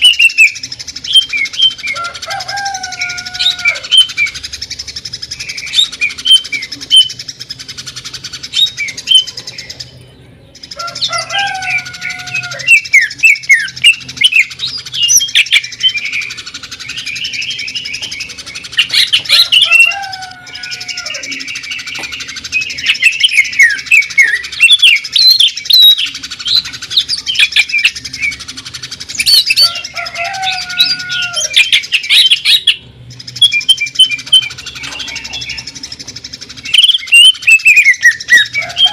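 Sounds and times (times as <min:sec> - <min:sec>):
bird singing chirps and trills: 0:00.0 - 0:38.9.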